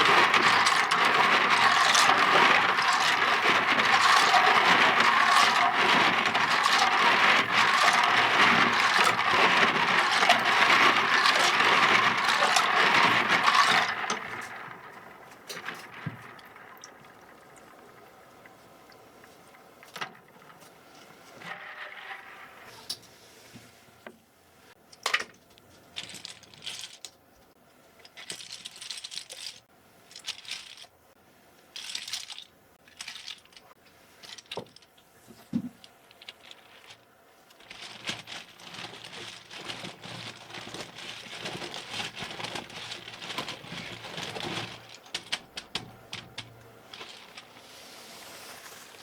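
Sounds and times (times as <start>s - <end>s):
scrubbing hiss: 38.5s - 49.0s.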